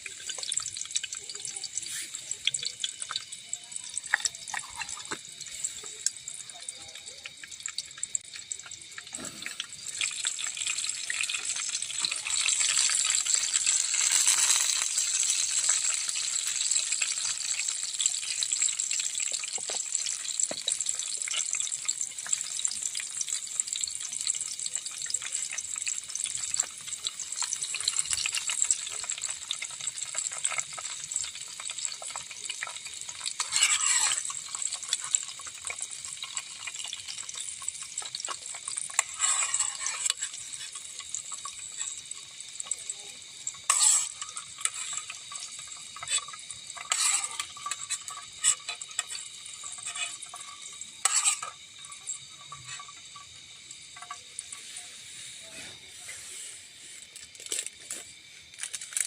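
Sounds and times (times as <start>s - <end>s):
food sizzling in a pot: 0.0s - 59.0s
utensil scraping a pot: 31.6s - 42.0s, 43.4s - 53.3s.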